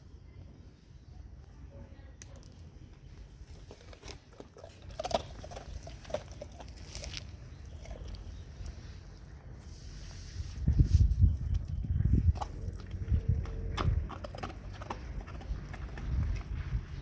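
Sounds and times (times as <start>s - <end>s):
dog crunching a treat: 3.5s - 8.3s, 12.2s - 17.0s.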